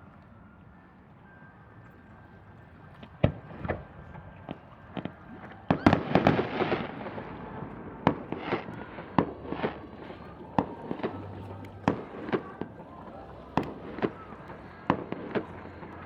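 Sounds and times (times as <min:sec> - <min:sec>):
fireworks bangs: 0:03.2 - 0:16.0
fireworks crackling: 0:03.2 - 0:16.0.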